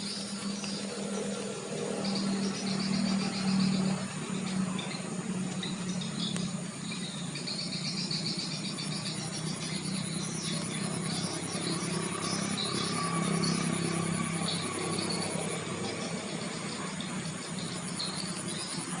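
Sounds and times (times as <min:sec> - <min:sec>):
small bird chirping and trilling: 0:00.0 - 0:19.0
steady low hum: 0:00.0 - 0:19.0.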